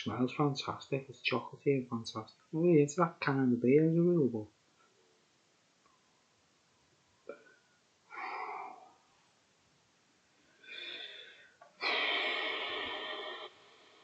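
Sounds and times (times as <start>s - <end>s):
man breathing close to microphone: 8.1s - 9.0s, 10.5s - 14.0s.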